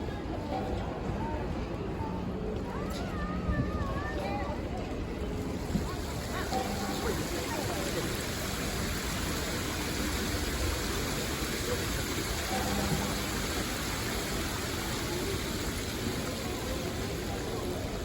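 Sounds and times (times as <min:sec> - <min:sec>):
fountain water running: 0:04.0 - 0:18.0.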